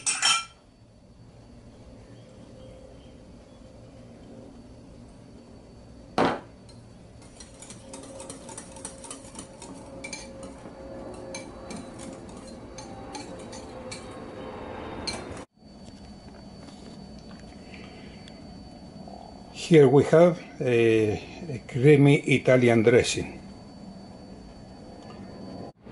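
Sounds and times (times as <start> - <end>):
utensil scraping a bowl: 7.2 - 15.4.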